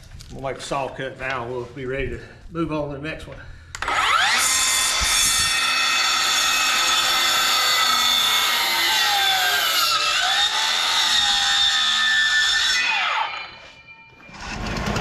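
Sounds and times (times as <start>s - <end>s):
circular saw cutting wood: 3.8s - 15.0s.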